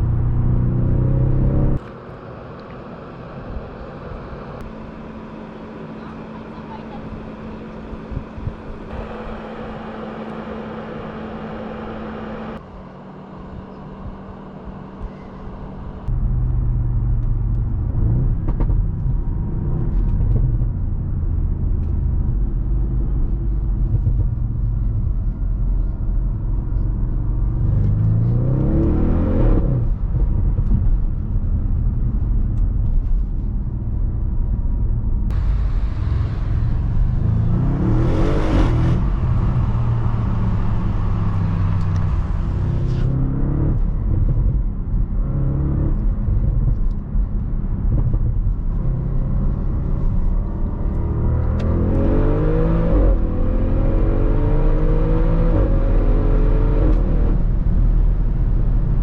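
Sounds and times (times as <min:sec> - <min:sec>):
car engine and exhaust rumble: 0:00.0 - 0:59.0.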